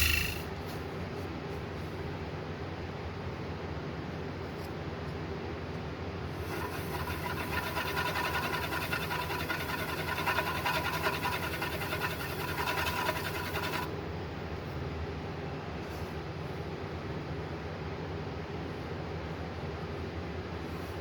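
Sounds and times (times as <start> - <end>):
turning tool scraping wood: 6.4 - 13.9
wood lathe motor hum: 6.4 - 13.9.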